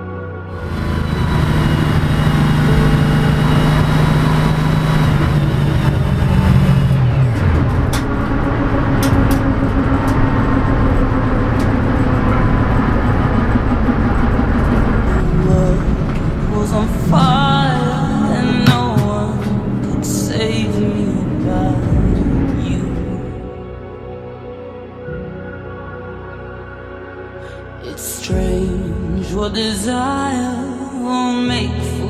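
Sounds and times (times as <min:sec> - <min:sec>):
car engine revving: 0:00.5 - 0:24.0.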